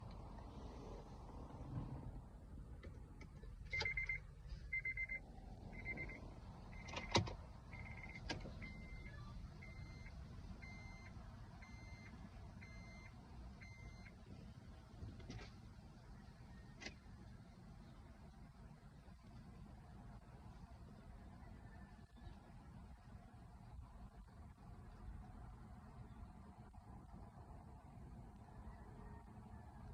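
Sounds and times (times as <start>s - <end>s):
car warning chime beeping: 3.7s - 14.4s.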